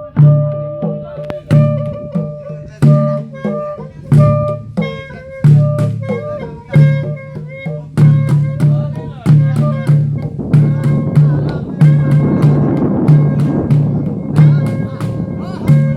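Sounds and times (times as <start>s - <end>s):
deep drum beat: 0.0s - 15.9s.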